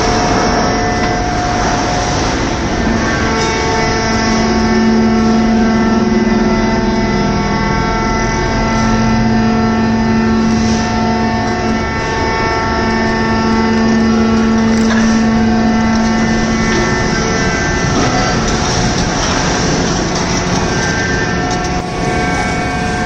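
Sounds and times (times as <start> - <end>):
scrap metal baler humming: 0.0 - 23.0.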